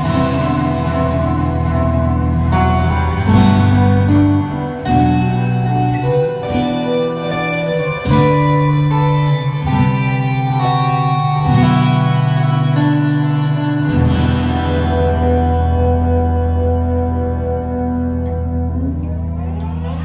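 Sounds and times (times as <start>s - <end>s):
guitar chords with echo: 0.0s - 20.0s.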